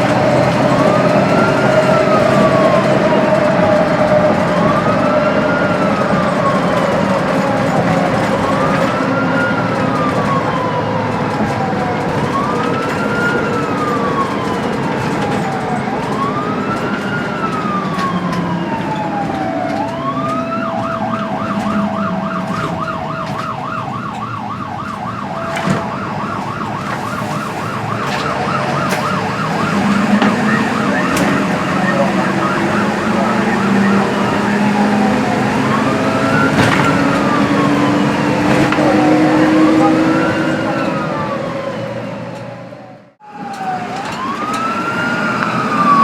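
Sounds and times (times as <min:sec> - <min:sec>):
ambulance siren: 0:00.0 - 0:46.0
engine and road noise: 0:00.0 - 0:46.0.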